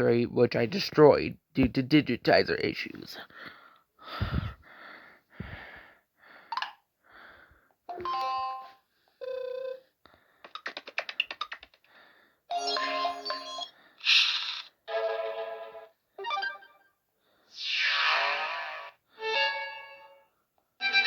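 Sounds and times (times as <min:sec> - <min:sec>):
phone notification chimes and blips: 0:12.5 - 0:13.7, 0:14.9 - 0:16.9.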